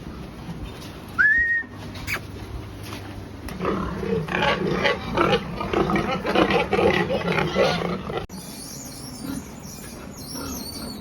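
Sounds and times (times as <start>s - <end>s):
pigs grunting and squealing: 3.6s - 8.3s.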